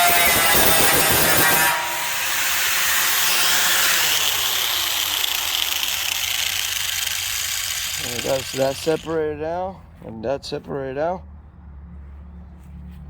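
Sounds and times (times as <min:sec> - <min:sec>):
angle grinder cutting steel: 0:00.0 - 0:09.4.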